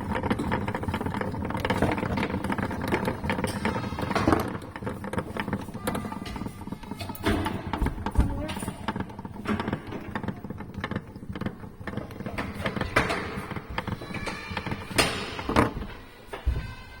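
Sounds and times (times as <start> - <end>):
wooden toy clattering: 0.0 - 16.8.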